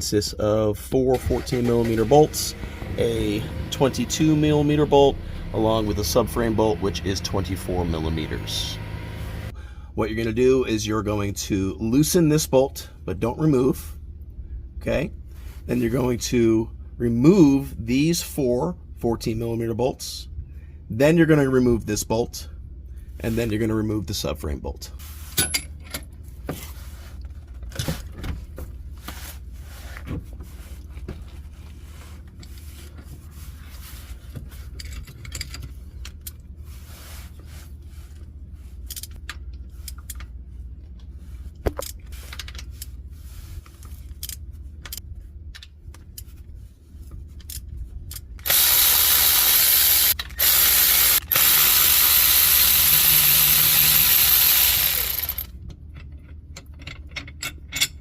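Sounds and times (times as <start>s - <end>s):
power tool running loudly: 1.4s - 9.5s, 48.4s - 55.5s
hand tools clicking: 48.1s - 55.5s.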